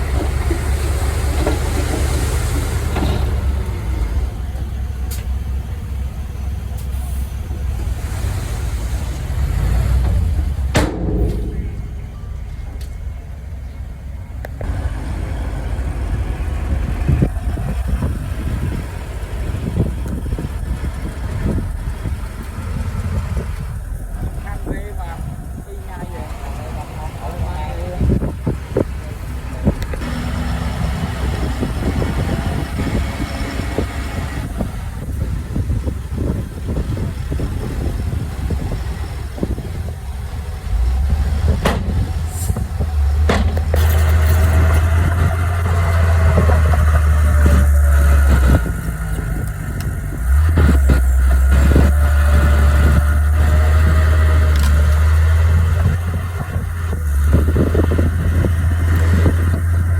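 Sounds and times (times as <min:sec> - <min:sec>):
heavy diesel engine rumbling: 0:00.0 - 0:59.9
sharp knock with ringing tail: 0:10.8 - 0:12.5.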